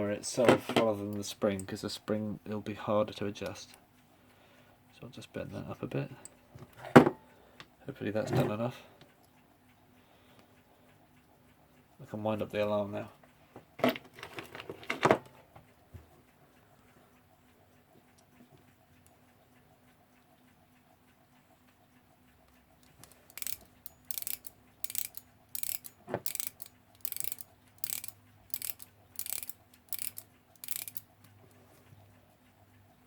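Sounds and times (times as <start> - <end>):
clock ratchet clicking: 16.5 - 33.0.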